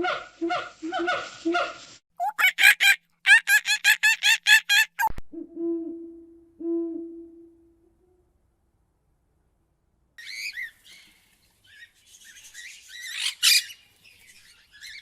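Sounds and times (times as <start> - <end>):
long steady hoots: 5.3 - 8.4.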